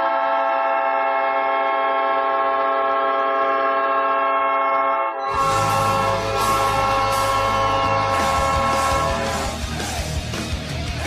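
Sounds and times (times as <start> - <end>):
goal horn blaring: 0.0 - 9.6
crowd roar: 5.2 - 11.0.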